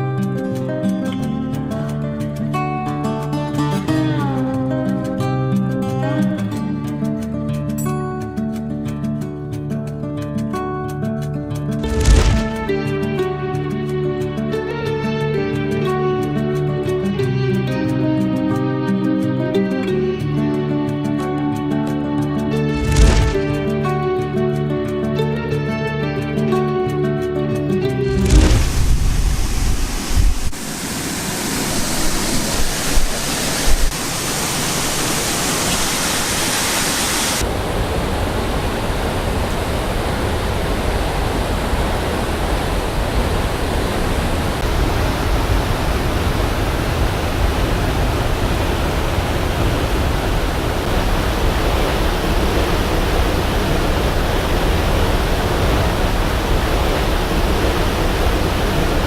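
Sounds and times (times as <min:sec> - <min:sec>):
waterfall rushing: 0:11.8 - 0:12.9, 0:22.8 - 0:23.8, 0:28.0 - 0:59.0.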